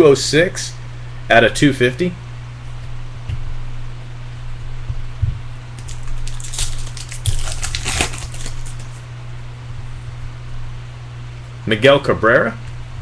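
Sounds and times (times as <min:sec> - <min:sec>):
card pack wrapper tearing and crinkling: 0:05.8 - 0:09.0.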